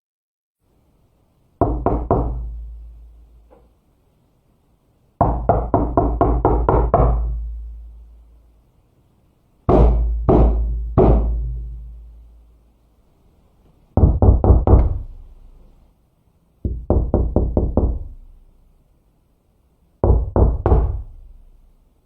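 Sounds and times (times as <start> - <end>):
knuckles knocking on wooden door: 1.6 - 2.5, 5.2 - 7.4, 14.0 - 15.1, 16.6 - 18.1, 20.0 - 21.1.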